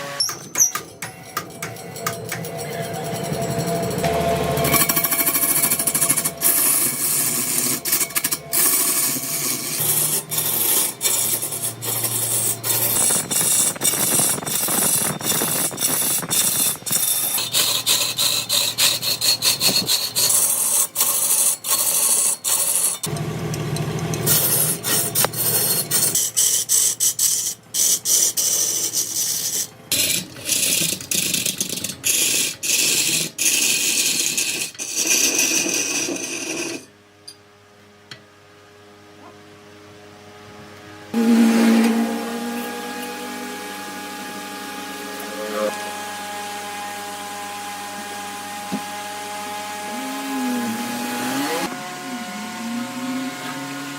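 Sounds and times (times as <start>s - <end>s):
tools scraping on a log: 4.8s - 23.2s.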